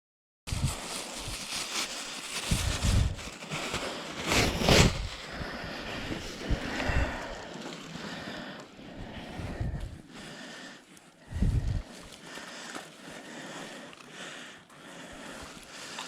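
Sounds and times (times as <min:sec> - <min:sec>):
wind buffeting microphone: 0:02.5 - 0:03.3, 0:09.0 - 0:10.0, 0:11.3 - 0:11.9.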